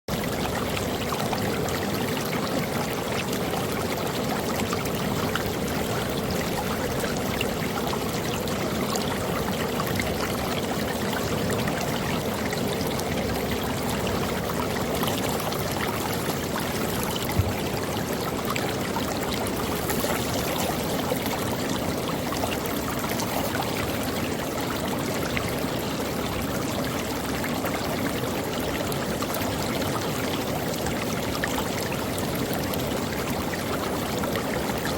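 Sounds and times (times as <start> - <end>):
creek water running: 0.1 - 34.9
brief low thump: 17.3 - 17.6.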